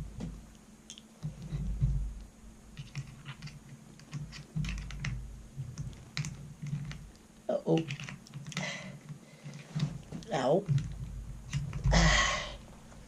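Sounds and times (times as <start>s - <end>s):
dull low thumps: 1.3s - 2.8s, 4.5s - 5.9s.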